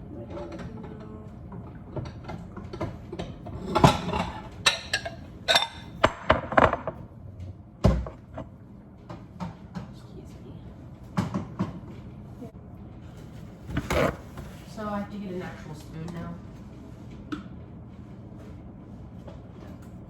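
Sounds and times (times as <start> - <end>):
cookware clattering and clinking: 0.2 - 7.0.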